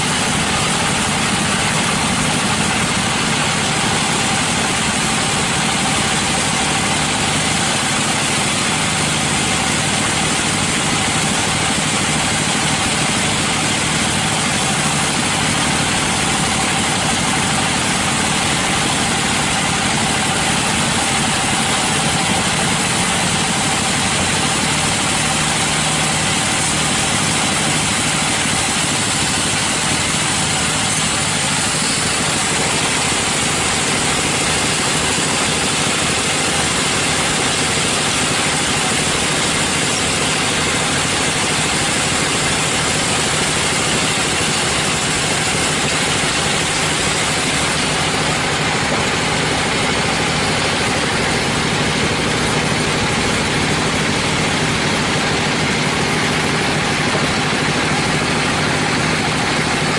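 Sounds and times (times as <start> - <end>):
sawmill machinery drone: 0.0 - 59.9.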